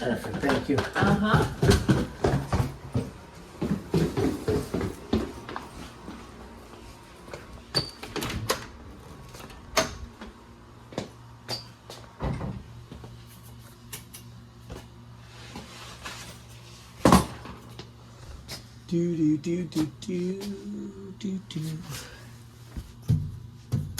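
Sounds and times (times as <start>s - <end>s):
footsteps: 0.0s - 7.7s
low steady hum: 0.0s - 23.9s
doors opening and closing: 7.2s - 10.4s.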